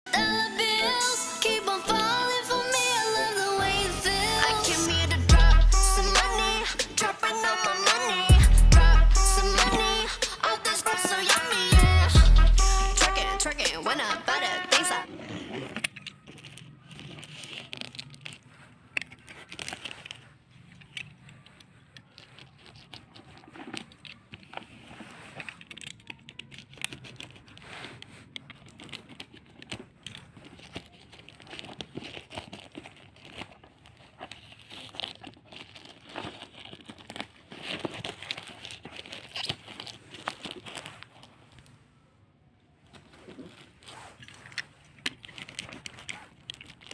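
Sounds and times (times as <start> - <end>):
packaging crinkling and tearing: 13.4 - 41.8, 42.8 - 46.9.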